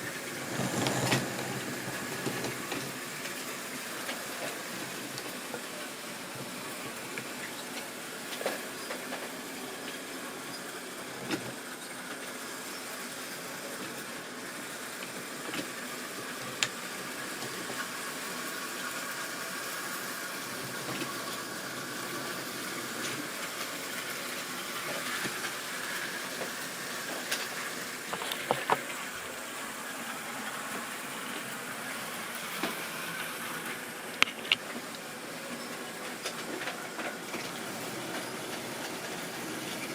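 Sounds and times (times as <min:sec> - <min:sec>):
model train motor whirring: 0:00.0 - 0:05.6.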